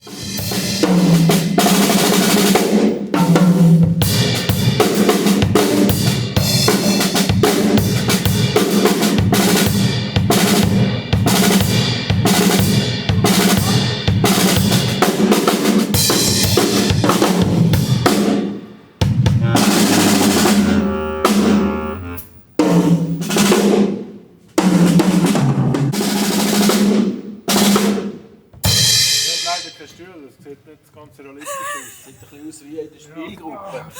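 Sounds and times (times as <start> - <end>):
low held note: 19.4 - 22.5.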